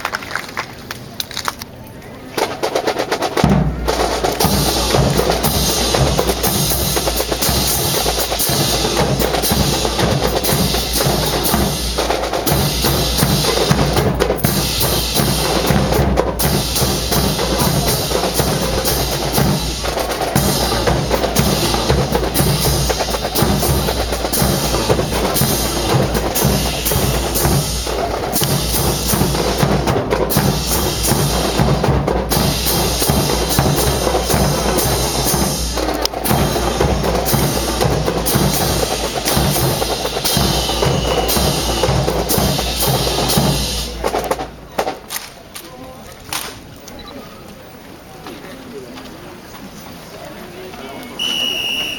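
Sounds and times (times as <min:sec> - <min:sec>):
snare drum rolls: 0:02.4 - 0:45.4, 0:51.2 - 0:51.9
bass drum beats: 0:03.4 - 0:44.0.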